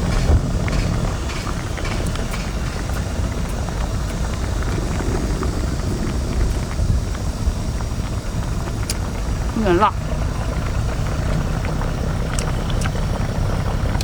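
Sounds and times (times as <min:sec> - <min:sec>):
low background rumble: 0:00.0 - 0:14.0
crunchy chewing: 0:10.5 - 0:14.0.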